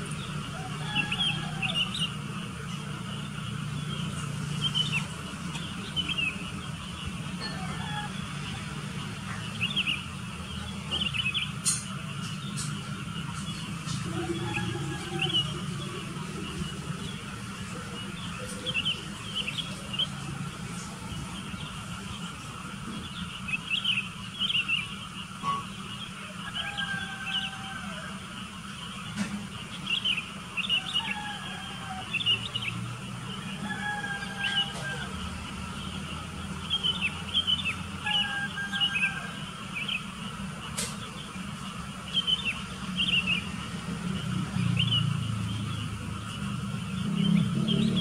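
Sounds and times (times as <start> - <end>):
birds chirping: 0.0 - 48.0.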